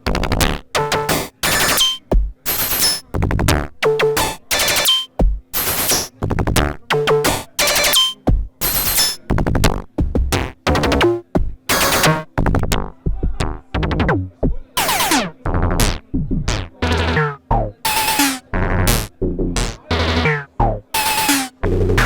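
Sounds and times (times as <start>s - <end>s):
synthesizer percussive hits: 0.1s - 12.9s, 17.9s - 22.0s.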